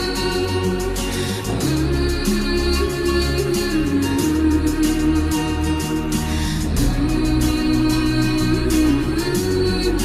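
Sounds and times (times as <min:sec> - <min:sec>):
background music with steady beat: 0:00.0 - 0:10.0.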